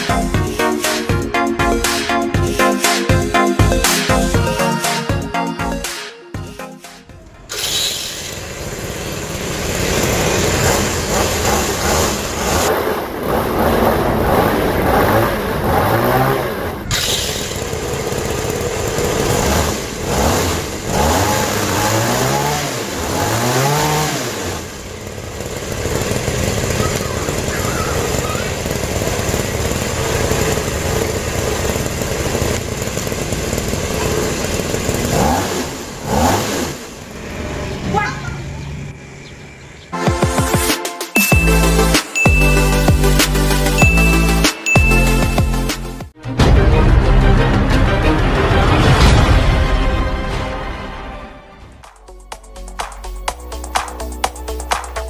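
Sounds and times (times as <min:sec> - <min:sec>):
motor revving: 0:07.5 - 0:37.7.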